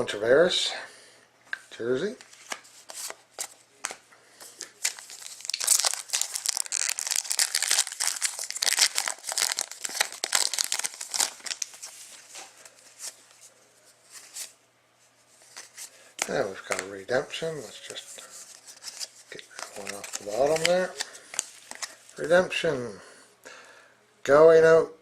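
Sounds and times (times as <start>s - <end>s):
wrapper tearing and crinkling: 4.6s - 12.2s, 18.7s - 22.1s.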